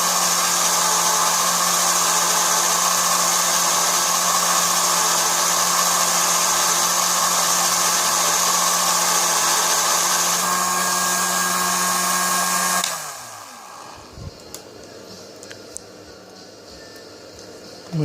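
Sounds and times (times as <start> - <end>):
drill motor whining: 0.0 - 14.2.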